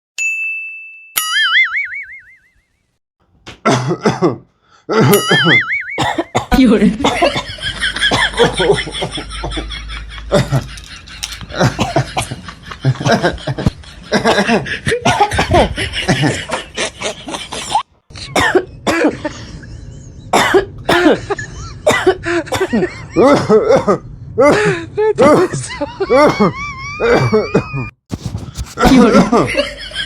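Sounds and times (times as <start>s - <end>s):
people coughing: 3.6s - 9.1s, 10.3s - 12.4s, 14.1s - 16.4s, 17.6s - 19.4s, 20.3s - 27.9s, 28.8s - 29.6s
laughter: 5.0s - 5.7s, 6.7s - 17.8s, 19.0s - 20.3s, 21.1s - 21.9s, 22.6s - 23.7s, 25.2s - 27.9s, 28.8s - 30.0s.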